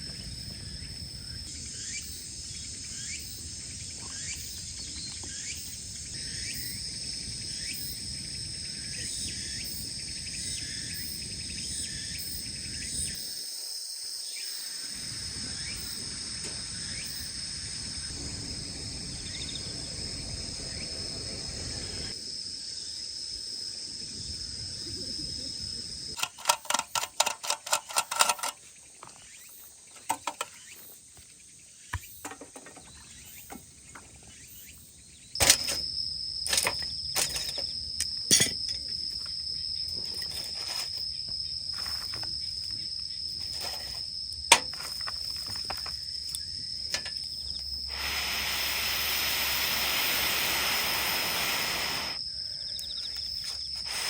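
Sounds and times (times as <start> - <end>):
crickets trilling: 0.0 - 54.0
sharp clicks and knocks: 26.2 - 28.6, 30.0 - 30.6
steady hiss: 46.9 - 52.2, 53.3 - 54.0.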